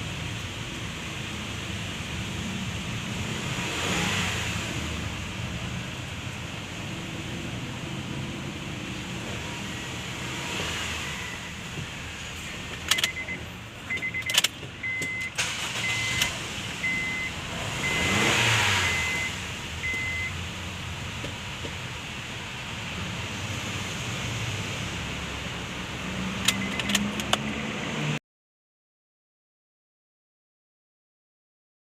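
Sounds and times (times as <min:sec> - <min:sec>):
car engine idling: 0:00.0 - 0:27.5
high warning chime beeping: 0:12.9 - 0:20.4, 0:26.5 - 0:27.0
sharp clicks: 0:26.4 - 0:27.5.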